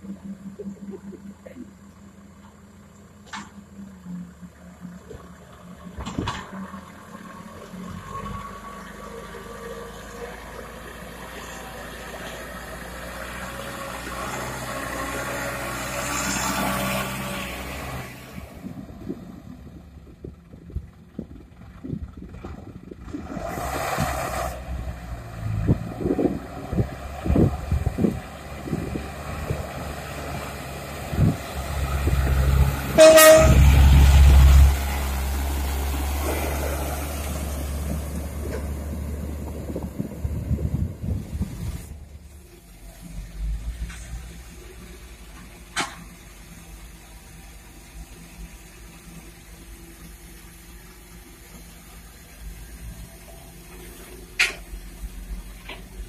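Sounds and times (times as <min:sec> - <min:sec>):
heavy diesel engine running: 0:00.0 - 0:23.7, 0:24.5 - 0:56.0
short horn toot: 0:32.9 - 0:33.9.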